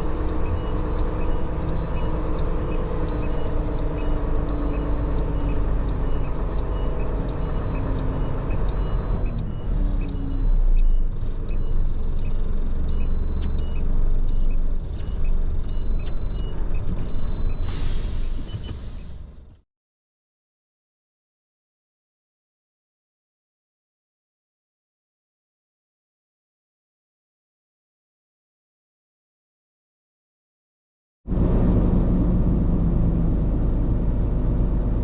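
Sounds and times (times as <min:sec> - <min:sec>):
truck engine rumbling: 0:00.0 - 0:19.6, 0:31.3 - 0:35.0.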